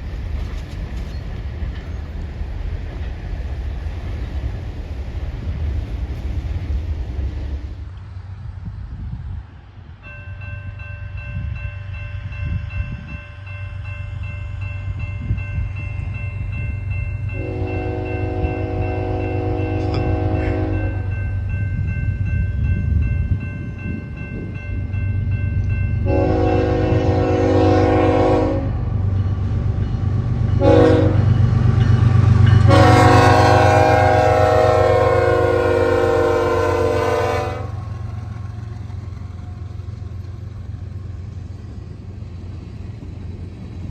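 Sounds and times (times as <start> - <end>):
locomotive rumble: 10.6 - 43.9
locomotive air horn blasts: 17.4 - 21.1, 26.0 - 28.8, 30.6 - 31.3, 32.7 - 37.8.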